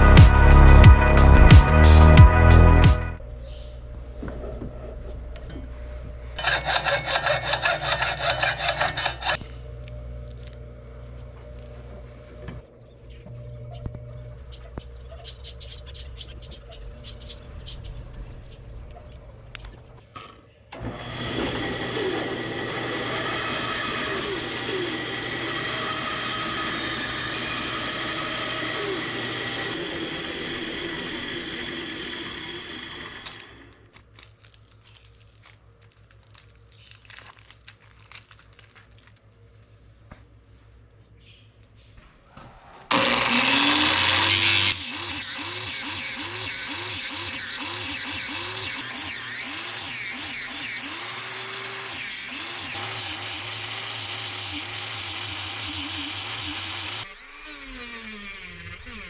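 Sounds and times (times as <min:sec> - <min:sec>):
power tool running loudly: 0:20.8 - 0:33.8, 0:42.9 - 0:59.0.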